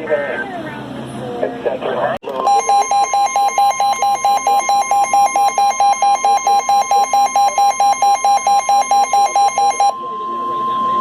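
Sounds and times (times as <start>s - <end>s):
lower tone beeping: 2.4s - 11.0s
steady high alert tone: 2.4s - 11.0s.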